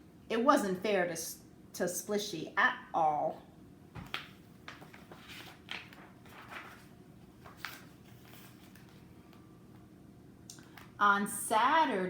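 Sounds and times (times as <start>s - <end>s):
book pages turning: 4.0s - 9.4s.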